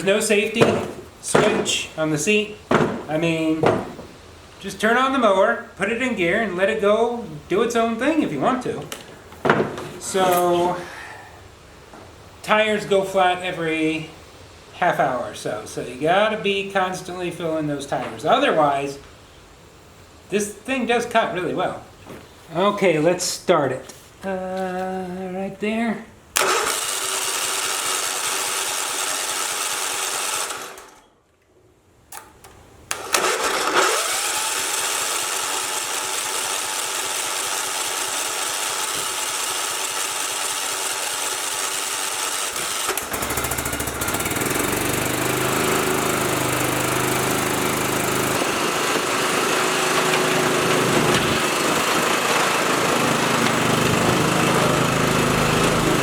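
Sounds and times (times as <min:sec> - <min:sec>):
riding lawnmower engine: 0:00.0 - 0:04.0, 0:26.4 - 0:31.0, 0:32.9 - 0:56.0.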